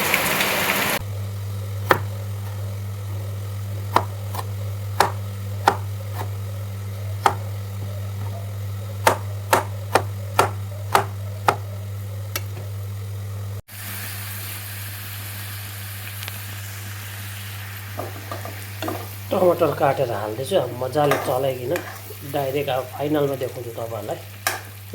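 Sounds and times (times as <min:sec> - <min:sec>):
steady low hum: 0:01.0 - 0:13.6
knife chopping on cutting board: 0:01.9 - 0:02.6, 0:03.9 - 0:06.3, 0:07.2 - 0:07.5, 0:09.0 - 0:11.6.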